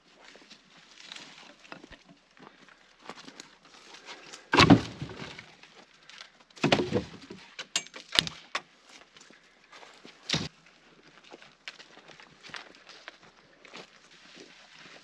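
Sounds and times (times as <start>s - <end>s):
heavy knocks with cracking rattle: 6.6s - 8.4s.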